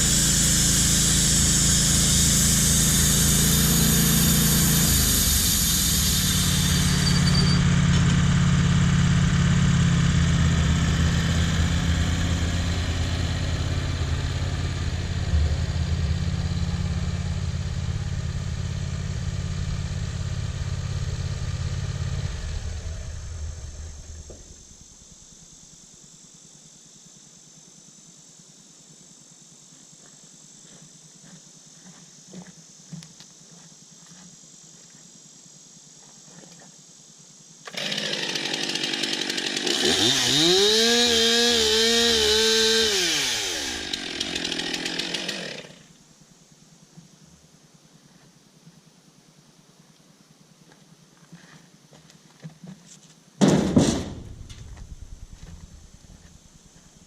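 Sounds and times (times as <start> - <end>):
high hiss: 0.0 - 7.6
sawmill engine running: 0.0 - 25.0, 37.7 - 45.9, 53.4 - 56.9.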